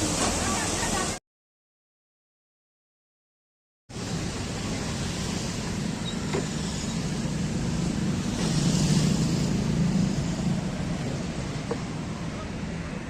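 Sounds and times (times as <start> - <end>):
roadway noise: 0.0 - 1.2, 3.9 - 13.0
vehicle engine hum: 3.9 - 13.0.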